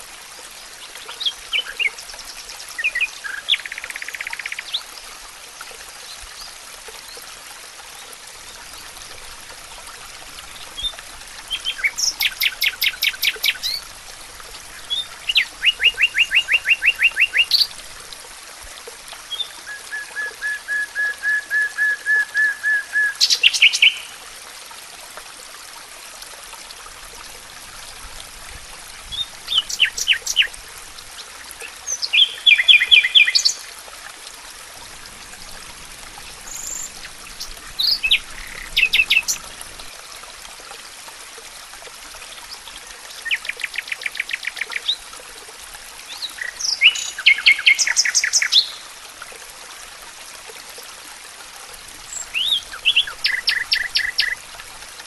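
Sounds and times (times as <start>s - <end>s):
songbirds singing trills: 29.1s - 30.5s, 36.5s - 39.5s, 46.1s - 48.8s, 52.1s - 54.4s.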